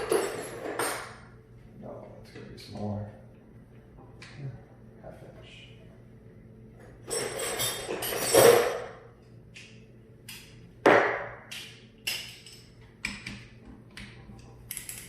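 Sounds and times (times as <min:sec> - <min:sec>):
metal tools clattering: 0:00.0 - 0:01.2, 0:07.0 - 0:09.0, 0:14.4 - 0:15.0.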